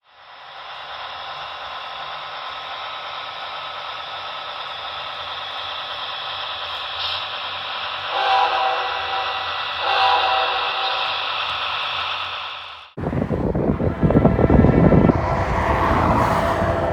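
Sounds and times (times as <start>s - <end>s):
freight train rumbling: 0.1s - 16.9s
locomotive air horn: 8.1s - 11.3s, 13.0s - 16.9s.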